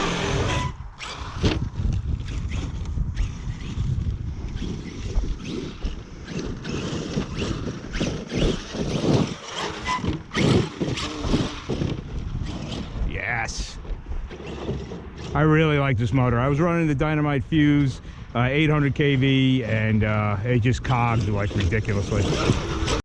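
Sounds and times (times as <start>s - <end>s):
electric rc truck motor: 0.0s - 13.1s, 14.2s - 15.5s, 20.8s - 23.0s
wind buffeting microphone: 0.0s - 23.0s.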